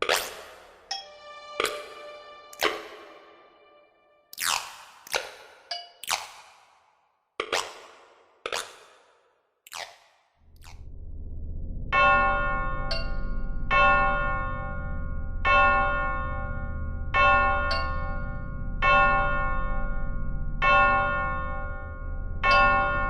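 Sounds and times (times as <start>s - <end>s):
low drone: 10.5s - 23.0s
ringing bell-like tone: 12.0s - 23.0s.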